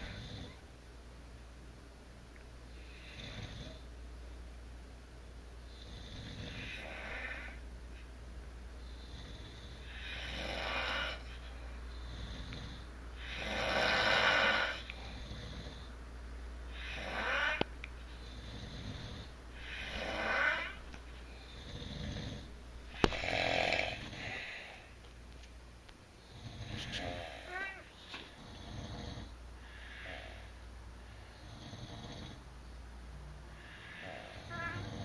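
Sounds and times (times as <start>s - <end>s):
people snoring: 0.0s - 0.6s, 5.7s - 7.6s, 8.8s - 16.0s, 16.7s - 24.8s, 26.2s - 30.5s, 31.3s - 32.4s, 33.6s - 35.0s
faint breaths: 5.6s - 25.1s, 26.1s - 32.5s, 33.2s - 35.0s.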